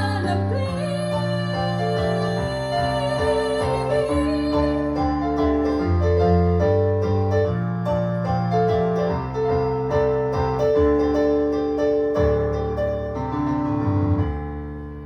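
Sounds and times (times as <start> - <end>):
piano playing chords: 0.0 - 15.0.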